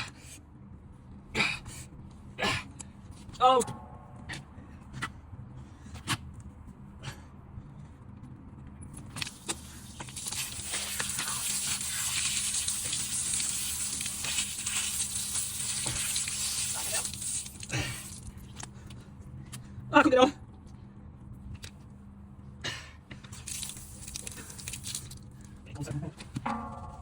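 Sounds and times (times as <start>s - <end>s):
constant low hum: 0.0s - 27.0s
steady hiss: 9.2s - 18.5s, 23.4s - 25.2s.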